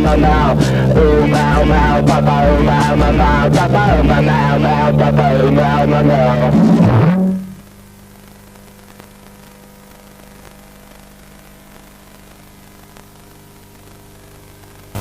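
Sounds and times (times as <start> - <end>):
steady hiss: 0.0 - 15.0.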